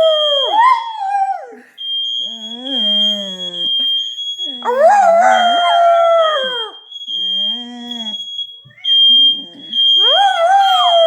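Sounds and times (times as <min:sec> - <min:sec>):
smoke alarm tone: 0:00.0 - 0:01.1, 0:01.7 - 0:11.0
dog howling: 0:04.6 - 0:06.8, 0:09.3 - 0:11.0.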